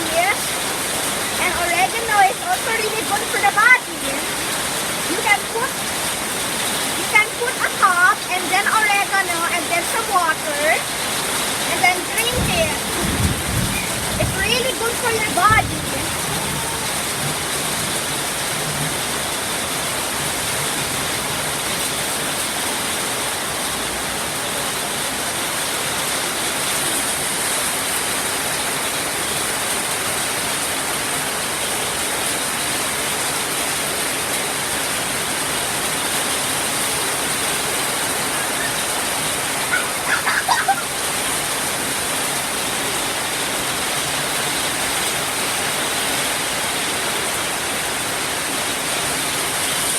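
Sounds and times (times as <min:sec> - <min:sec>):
steady rain falling: 0:00.0 - 0:49.9
short high-pitched calls: 0:38.2 - 0:39.0.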